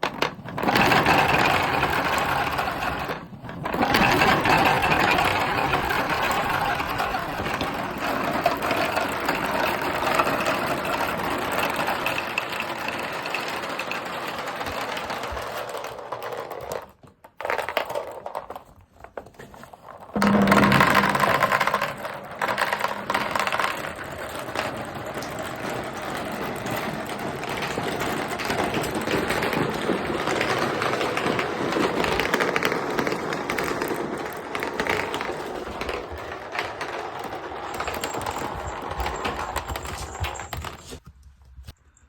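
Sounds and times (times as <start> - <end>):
marbles rolling and clattering: 0.0 - 41.0.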